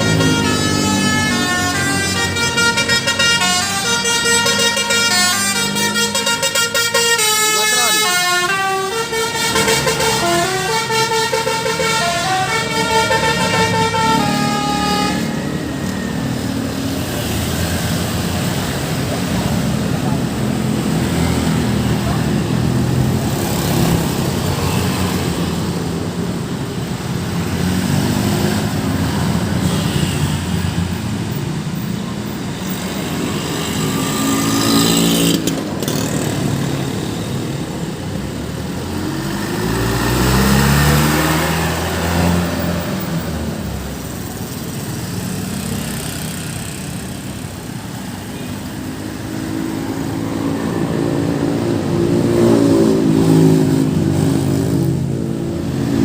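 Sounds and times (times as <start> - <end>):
cars and motorcycles passing: 0.0 - 56.0
large vehicle engine passing: 38.8 - 43.6.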